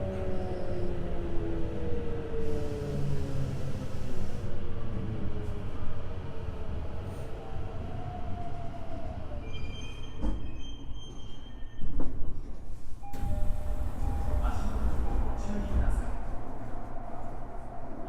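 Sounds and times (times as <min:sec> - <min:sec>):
high brake squeal: 0:09.4 - 0:11.9
train wheel rumble: 0:12.0 - 0:18.0
train inverter whine: 0:13.0 - 0:18.0.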